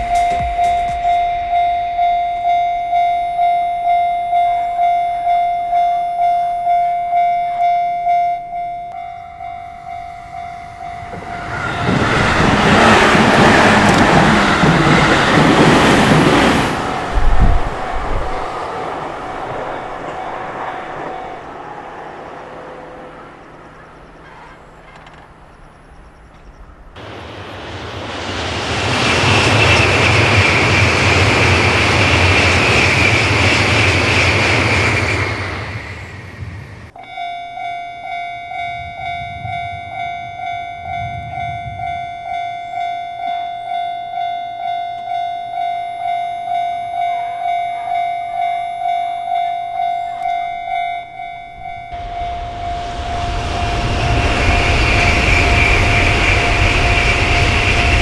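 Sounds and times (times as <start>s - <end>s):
train wheels on rails: 0.0s - 3.5s, 8.9s - 37.0s, 38.0s - 58.0s
high ringing note: 0.0s - 12.0s.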